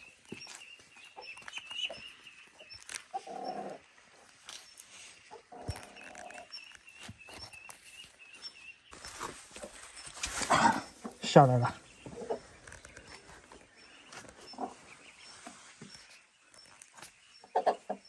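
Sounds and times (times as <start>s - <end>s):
ducklings peeping: 0.0s - 10.2s, 10.8s - 18.0s
rustling through vegetation: 0.0s - 17.4s
low animal calls: 3.1s - 3.9s.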